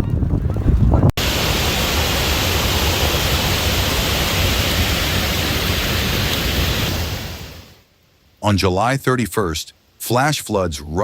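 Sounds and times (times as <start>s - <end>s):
strong wind buffeting microphone: 0.0s - 7.6s.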